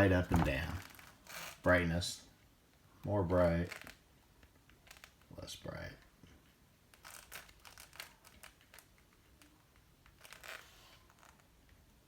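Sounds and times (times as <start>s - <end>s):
soft handling clicks and rustles: 3.6s - 12.0s.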